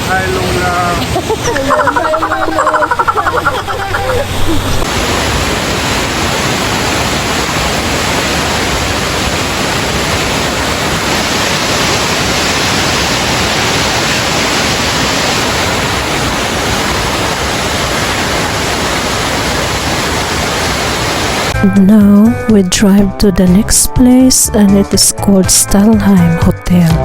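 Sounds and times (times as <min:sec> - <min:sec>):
waterfall rushing: 0:00.0 - 0:21.6.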